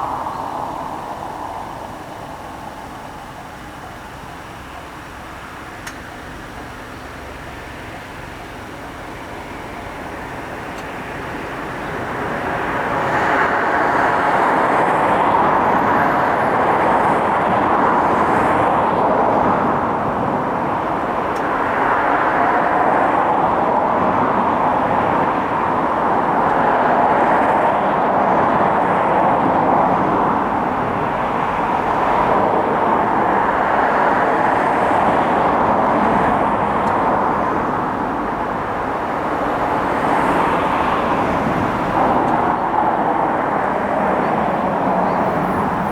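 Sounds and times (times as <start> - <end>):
train wheels rumbling on rail: 9.9 - 45.9.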